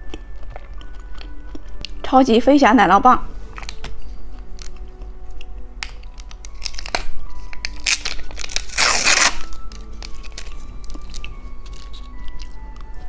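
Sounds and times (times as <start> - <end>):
soft background music: 0.0 - 13.0
plastic wrapper crinkling: 3.3 - 13.0
wrapper tearing: 5.4 - 12.6.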